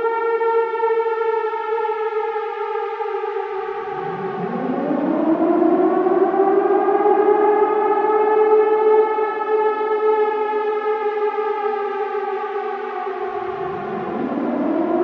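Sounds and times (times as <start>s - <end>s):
air raid siren wailing: 0.0s - 15.0s.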